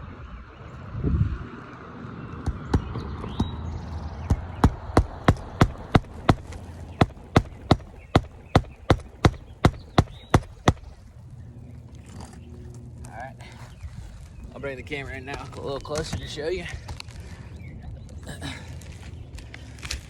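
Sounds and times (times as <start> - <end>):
hammer striking on shingle roof: 2.4 - 3.6, 4.2 - 11.0.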